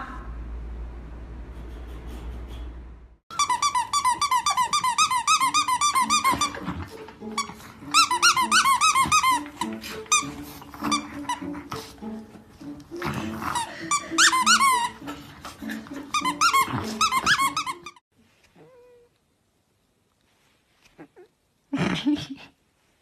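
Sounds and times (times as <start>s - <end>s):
rapid high-pitched squeaks: 1.6s - 6.6s
background music with held notes: 4.4s - 18.0s.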